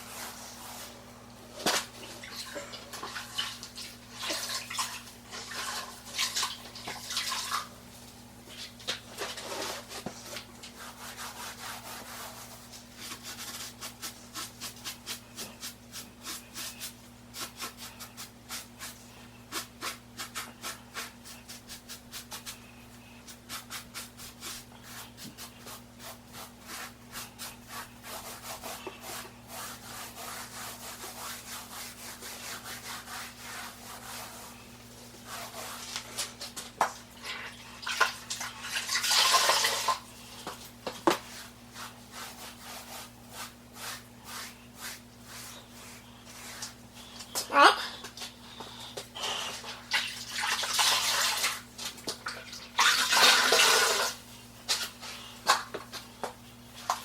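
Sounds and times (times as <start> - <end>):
faint steady hum: 0.0 - 57.0
sponge rubbing on mortar: 10.7 - 34.6, 41.3 - 46.8.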